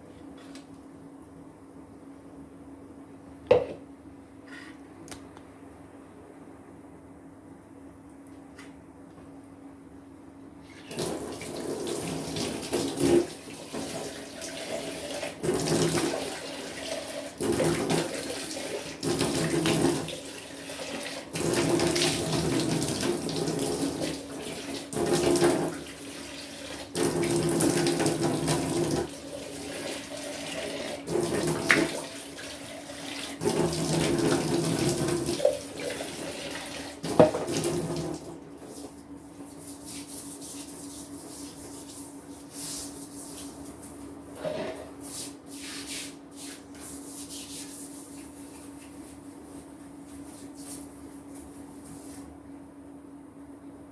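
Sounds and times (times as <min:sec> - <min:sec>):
water splashing into sink: 0:10.7 - 0:38.5.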